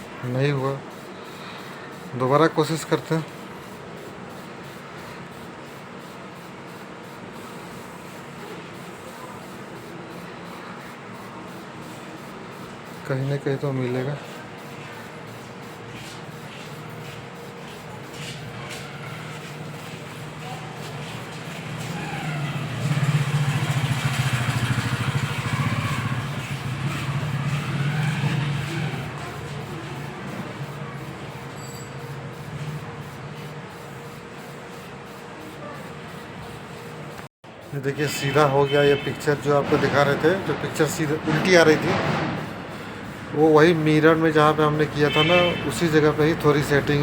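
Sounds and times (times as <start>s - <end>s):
vehicle engine running: 17.0s - 34.4s, 38.0s - 47.0s.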